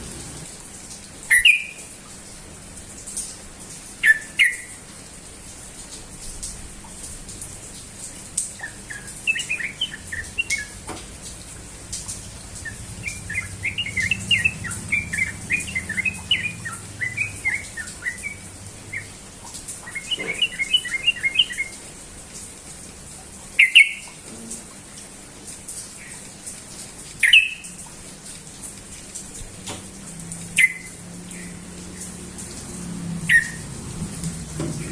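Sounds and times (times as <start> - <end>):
bird chattering whistled song: 8.6 - 10.8, 12.6 - 19.1, 19.8 - 21.7, 33.3 - 33.6.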